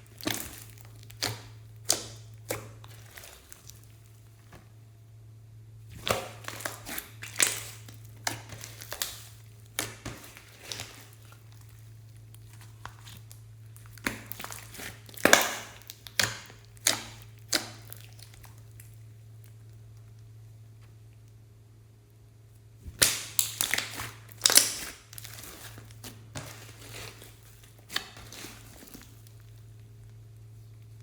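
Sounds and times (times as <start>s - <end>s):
slime squishing and crackling: 0.0s - 4.6s, 5.8s - 20.2s, 22.8s - 30.9s
steady low hum: 0.0s - 31.0s.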